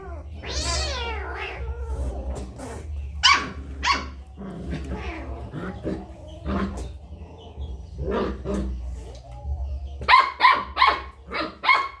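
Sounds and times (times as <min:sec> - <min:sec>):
dog barking: 0:03.2 - 0:04.2, 0:10.0 - 0:12.0.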